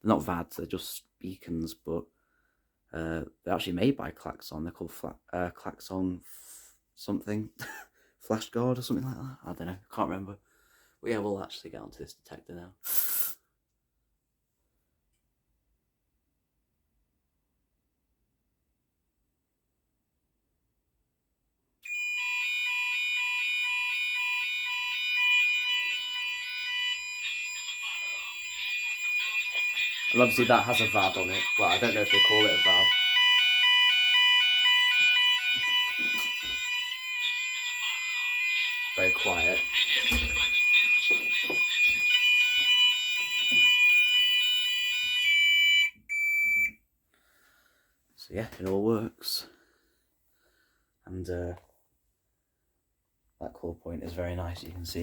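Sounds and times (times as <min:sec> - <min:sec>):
fire alarm sounders: 0:21.8 - 0:46.8.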